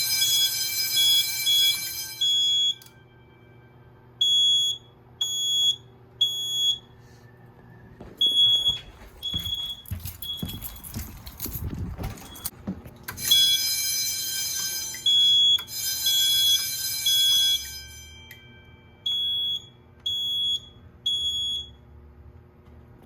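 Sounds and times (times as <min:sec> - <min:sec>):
high alarm beep: 0:00.0 - 0:03.6, 0:04.2 - 0:06.9, 0:08.2 - 0:11.2, 0:15.0 - 0:21.8
harsh electronic alarm tone: 0:00.0 - 0:07.2, 0:07.8 - 0:11.2, 0:13.2 - 0:21.8.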